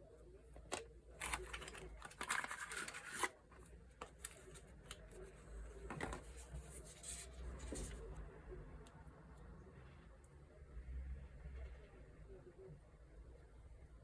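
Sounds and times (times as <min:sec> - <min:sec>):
packaging taps and rustles: 0:00.6 - 0:03.4.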